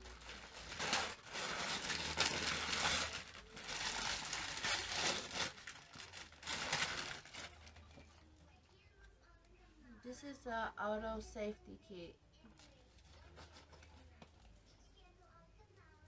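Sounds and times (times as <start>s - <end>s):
wrapping paper ripping and crinkling: 0.0s - 8.2s, 12.6s - 14.6s.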